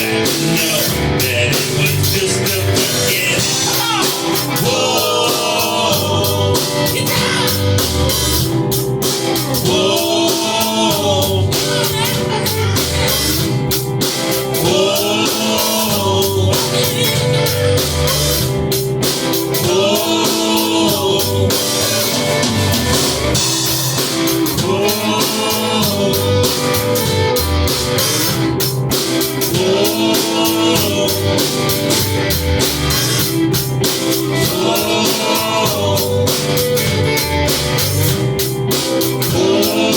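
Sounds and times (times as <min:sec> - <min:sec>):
drum kit steady beat: 0:00.0 - 0:39.9
electric guitar: 0:00.0 - 0:39.9.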